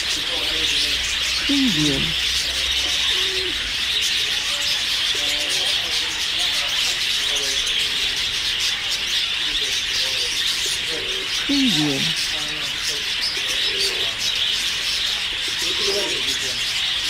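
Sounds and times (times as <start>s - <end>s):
birds chirping: 0.0s - 17.0s
lower bird calls: 0.6s - 4.0s, 11.3s - 12.8s.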